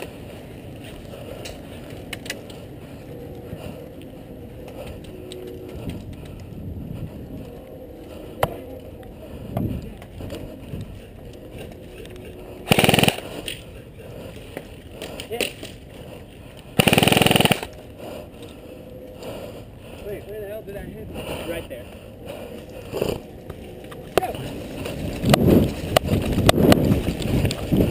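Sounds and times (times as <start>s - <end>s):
airsoft rifle full-auto burst: 12.7s - 13.2s, 16.8s - 17.7s.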